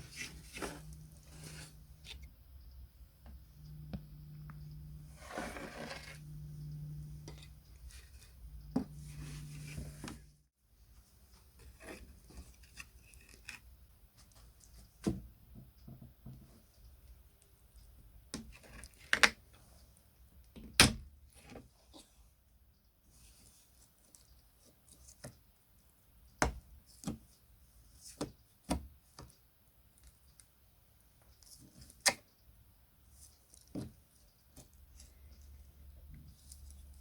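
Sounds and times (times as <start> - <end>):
low steady hum: 0.0 - 11.6.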